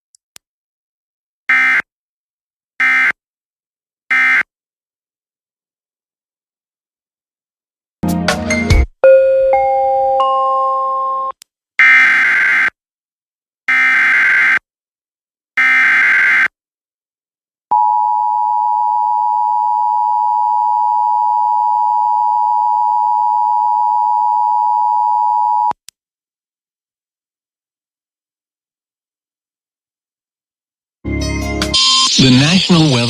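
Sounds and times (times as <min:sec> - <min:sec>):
screechy digital header bursts: 0:31.8 - 0:33.0
two-tone attention signal: 0:31.8 - 0:33.0.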